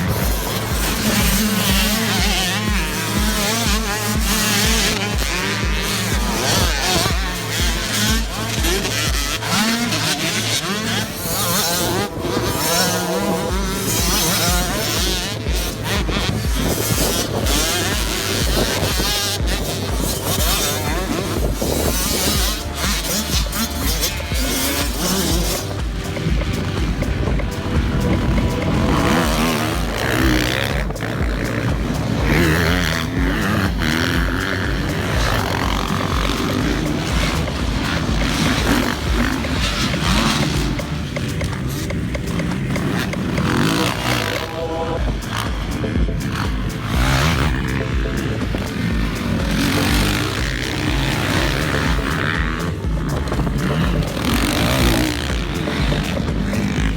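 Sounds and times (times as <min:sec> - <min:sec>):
motocross bike engines revving: 0:00.0 - 0:56.9
music with steady bass beat: 0:00.0 - 0:56.9.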